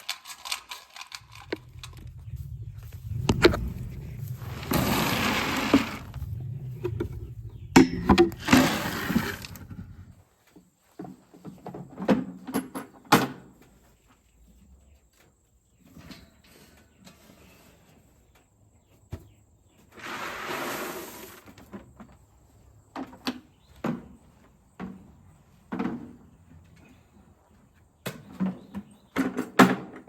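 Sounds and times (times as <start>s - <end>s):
rushing noise: 1.2s - 10.1s.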